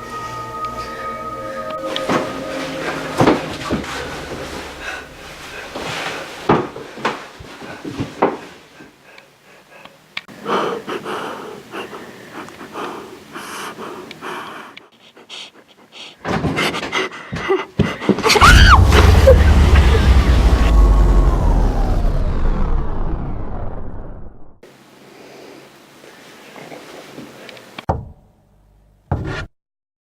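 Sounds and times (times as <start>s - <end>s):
person panting: 4.5s - 18.4s.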